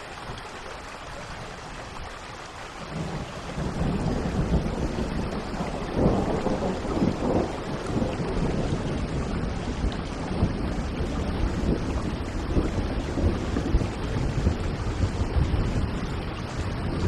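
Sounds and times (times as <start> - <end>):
steady rain falling: 0.0 - 17.0
distant thunder rumble: 2.9 - 17.0.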